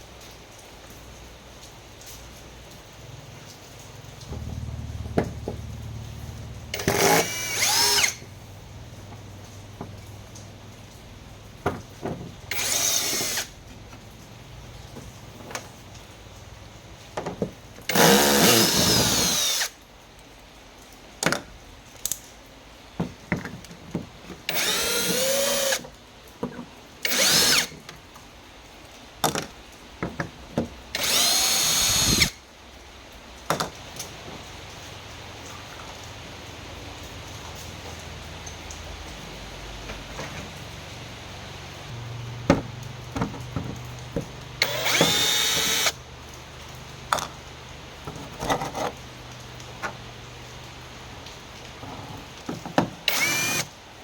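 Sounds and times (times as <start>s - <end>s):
handheld power tool running: 6.7s - 8.3s, 12.5s - 13.5s, 17.9s - 19.7s, 24.5s - 25.8s, 27.1s - 27.7s, 31.0s - 32.4s, 44.6s - 46.0s, 53.1s - 53.7s.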